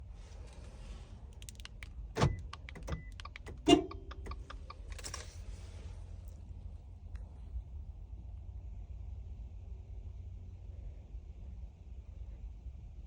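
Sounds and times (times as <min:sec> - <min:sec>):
small sharp clicks: 0:01.4 - 0:05.1.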